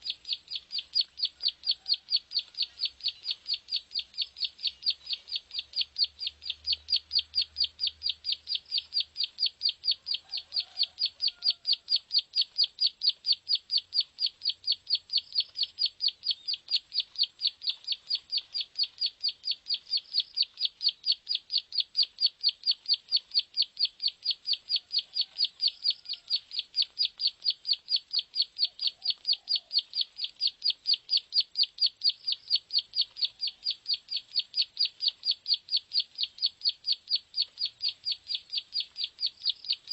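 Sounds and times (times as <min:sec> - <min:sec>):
bird song of rapid high notes: 0:00.0 - 0:10.4, 0:12.2 - 0:39.9.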